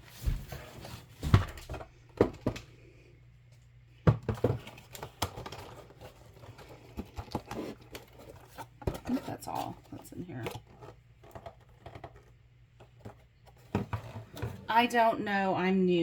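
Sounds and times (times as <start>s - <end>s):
packaging knocks and rustles: 4.0s - 14.7s.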